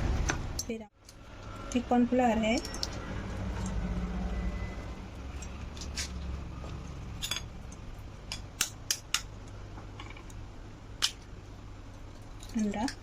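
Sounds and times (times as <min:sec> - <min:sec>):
utensils and dishes clicking: 0:02.4 - 0:03.8, 0:12.0 - 0:13.0.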